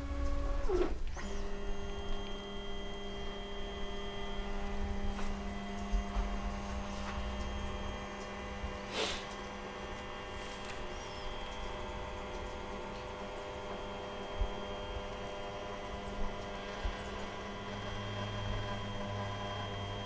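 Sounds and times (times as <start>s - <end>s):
printer humming with fixed tones: 0.0s - 20.0s
brief scrape: 8.9s - 9.3s.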